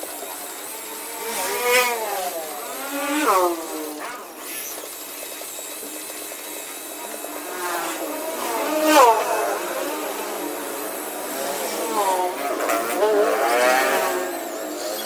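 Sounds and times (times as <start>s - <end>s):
electric polisher running: 0.0s - 15.0s.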